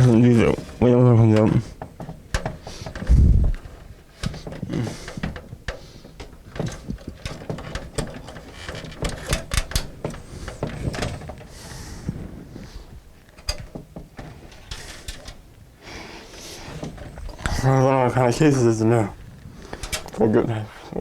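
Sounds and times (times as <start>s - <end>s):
computer parts clicking and knocking: 0.0s - 11.5s, 13.4s - 15.4s.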